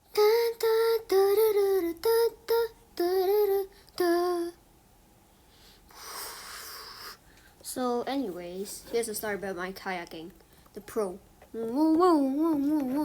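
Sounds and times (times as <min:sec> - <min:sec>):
high voice singing wordless tune: 0:00.0 - 0:04.6, 0:10.8 - 0:13.0.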